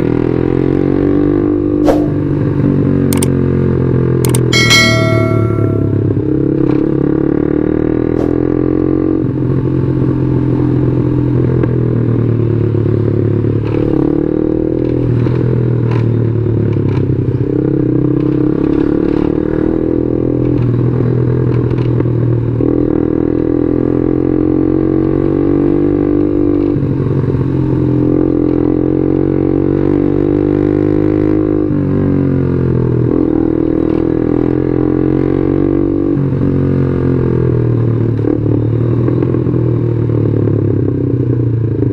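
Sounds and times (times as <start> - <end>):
sharp clicks: 4.3 - 4.5.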